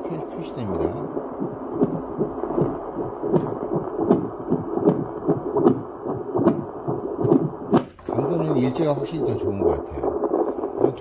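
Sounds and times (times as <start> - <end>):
pulsing whooshing doppler heartbeat: 0.0 - 11.0
probe clicks against skin: 2.6 - 7.9.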